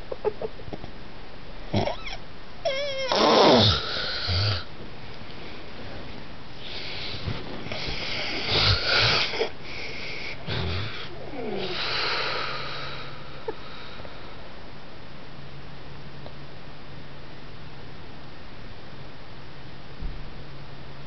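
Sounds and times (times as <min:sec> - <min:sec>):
man snoring heavily: 0:03.1 - 0:04.7, 0:07.8 - 0:09.5, 0:10.3 - 0:13.1.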